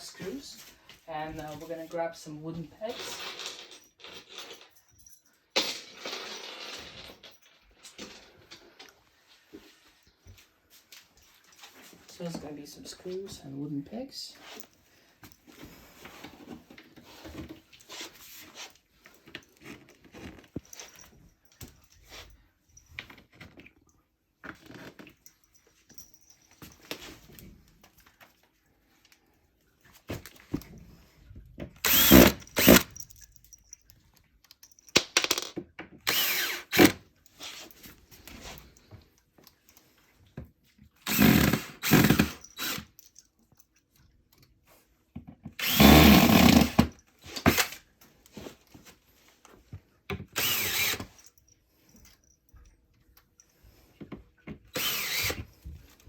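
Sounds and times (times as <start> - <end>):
power drill driving screws into wood: 31.8 - 33.0, 36.0 - 37.0, 41.0 - 43.0, 45.6 - 47.8, 50.3 - 51.2, 54.7 - 55.5.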